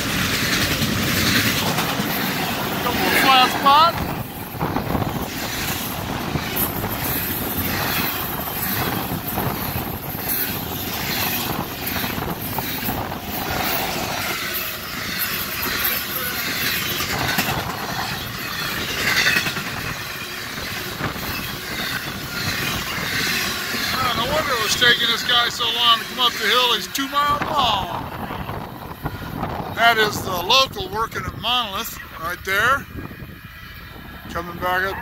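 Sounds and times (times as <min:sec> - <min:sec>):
rhythmic clatter of wheelsets: 0:00.0 - 0:27.0
wheels rushing on rail: 0:00.0 - 0:35.0.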